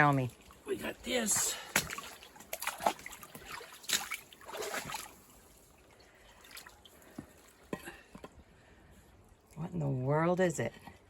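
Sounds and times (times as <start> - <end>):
creek water splashing: 0.0 - 7.7.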